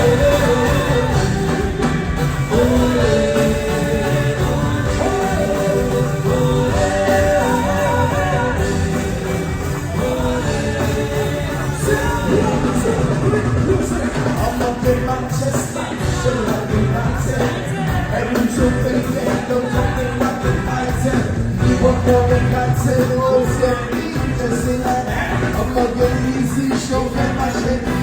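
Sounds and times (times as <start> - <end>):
music with singing voice: 0.0 - 28.0.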